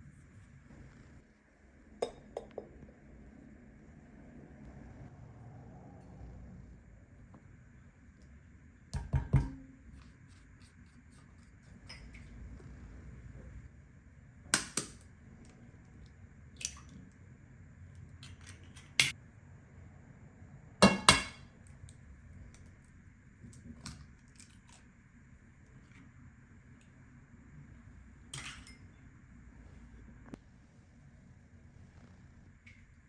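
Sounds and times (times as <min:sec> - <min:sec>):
dishes and utensils clinking: 0:28.4 - 0:28.9.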